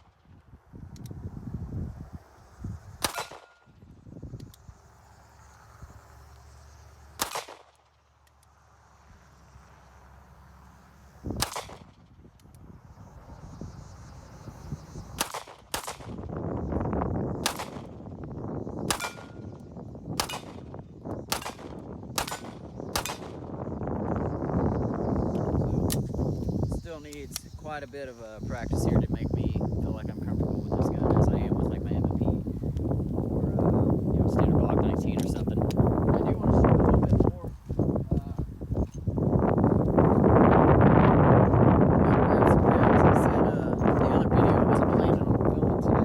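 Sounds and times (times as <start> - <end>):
wind buffeting microphone: 0.0 - 7.3, 11.0 - 46.0
pistol shots: 3.0 - 3.7, 7.2 - 8.0, 11.4 - 12.0, 15.2 - 16.2, 17.4 - 18.0, 18.9 - 19.4, 20.2 - 20.7, 21.3 - 23.5.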